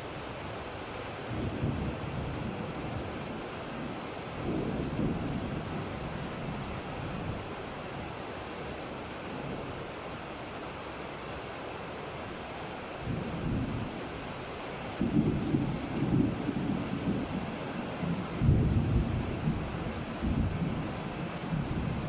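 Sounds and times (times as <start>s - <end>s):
distant thunder rumbling: 3.8s - 7.4s, 15.0s - 22.0s.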